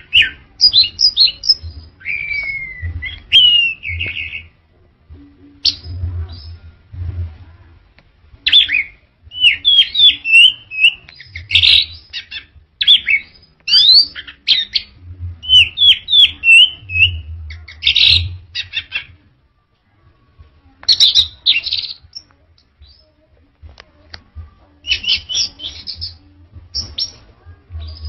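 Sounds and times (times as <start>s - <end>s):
thrush singing whistled notes: 0.0s - 4.6s, 8.5s - 19.0s.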